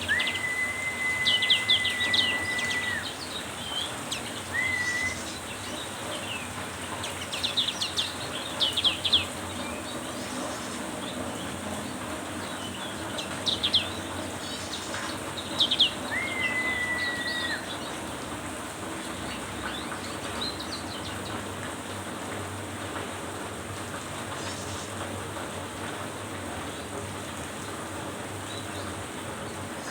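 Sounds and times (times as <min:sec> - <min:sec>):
bird chirping: 0:00.0 - 0:11.5, 0:12.4 - 0:18.0
long steady bird whistle: 0:00.0 - 0:11.8, 0:12.4 - 0:18.3
heavy rain hiss: 0:00.0 - 0:29.9.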